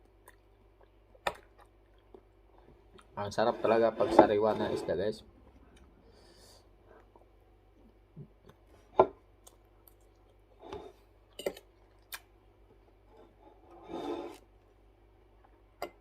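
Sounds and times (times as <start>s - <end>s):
eating sounds with light clicks: 0.0s - 3.1s, 9.4s - 10.4s, 11.4s - 12.3s.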